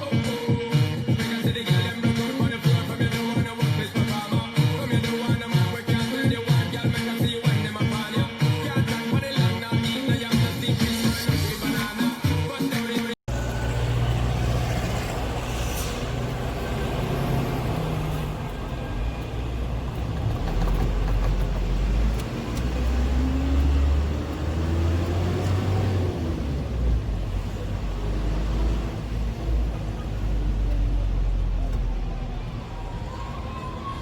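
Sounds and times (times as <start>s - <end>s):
lorry engine with road rumble: 13.3s - 34.0s.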